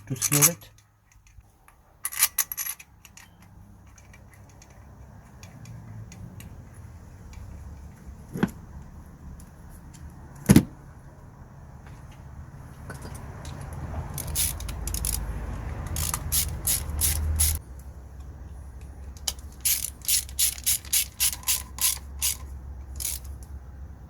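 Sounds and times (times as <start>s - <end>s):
metal tools clinking: 2.0s - 5.8s.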